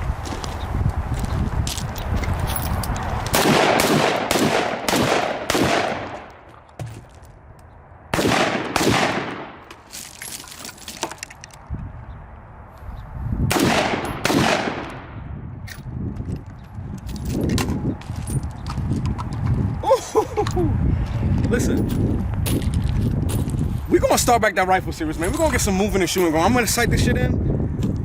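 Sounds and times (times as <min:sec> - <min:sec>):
rifle shots echoing: 0:03.3 - 0:06.4, 0:08.1 - 0:09.7, 0:13.5 - 0:15.2.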